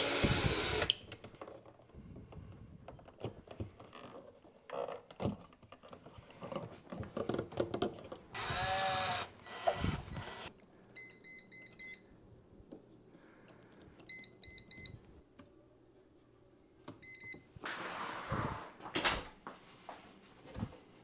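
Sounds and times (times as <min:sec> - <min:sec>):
power drill-driver running: 0:00.0 - 0:01.0, 0:08.4 - 0:10.5
hardware handling clicks and knocks: 0:05.1 - 0:08.3.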